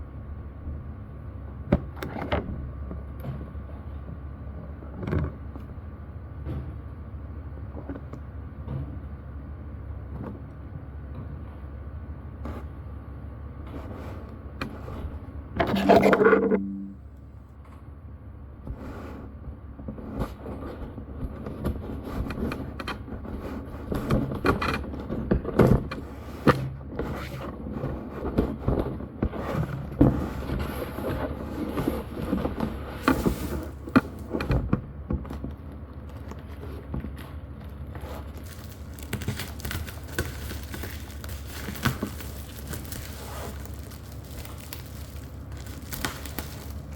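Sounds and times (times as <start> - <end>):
held low tone: 15.6 - 17.2
packaging scrapes and clicks: 29.4 - 34.5, 36.1 - 46.9.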